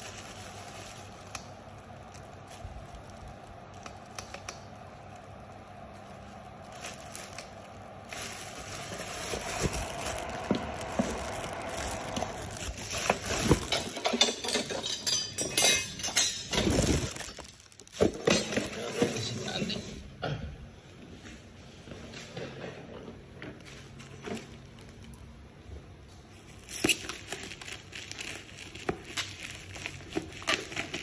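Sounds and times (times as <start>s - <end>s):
plastic packaging crinkling: 0.0s - 18.9s, 26.4s - 31.0s.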